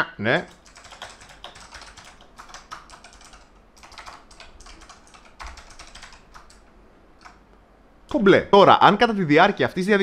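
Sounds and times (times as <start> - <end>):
keyboard keys clicking: 0.5 - 7.4.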